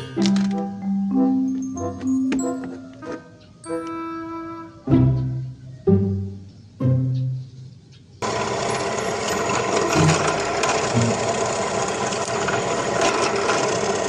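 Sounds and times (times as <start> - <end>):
plucked background music note: 0.0 - 7.6.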